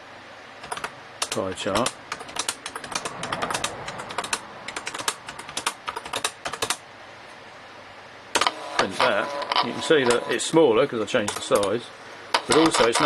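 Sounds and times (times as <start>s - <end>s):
electronic typewriter keys clicking: 0.6s - 6.8s, 11.2s - 11.8s.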